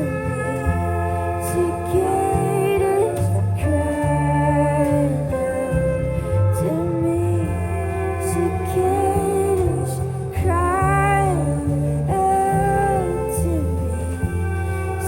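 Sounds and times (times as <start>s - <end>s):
instrumental accompaniment: 0.0s - 15.0s
woman singing with vibrato: 0.0s - 15.0s.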